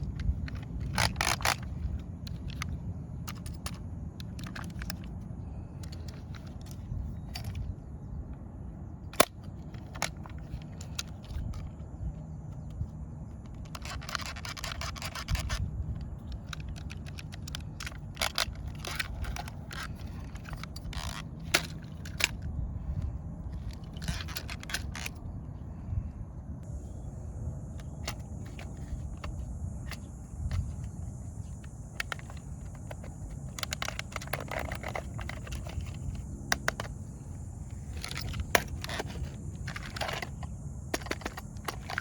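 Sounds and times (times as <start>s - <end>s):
steady low rumble: 0.0s - 42.0s
scraping and rattling: 13.4s - 25.2s, 27.8s - 42.0s.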